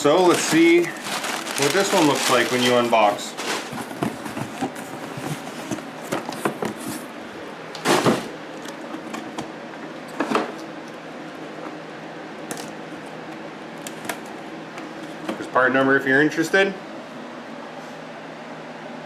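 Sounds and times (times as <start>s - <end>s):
packaging clicks and rustles: 0.0s - 7.0s
rustling scrapes: 0.3s - 5.9s.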